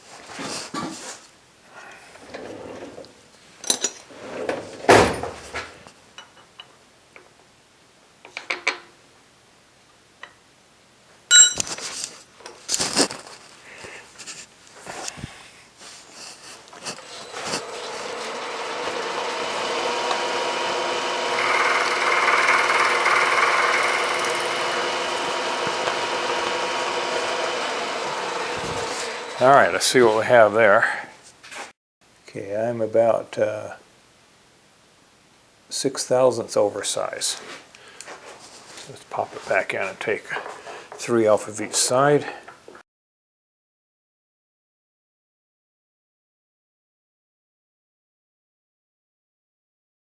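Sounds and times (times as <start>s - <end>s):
milling machine running: 16.8s - 29.9s
cutter cutting brass: 16.8s - 30.2s.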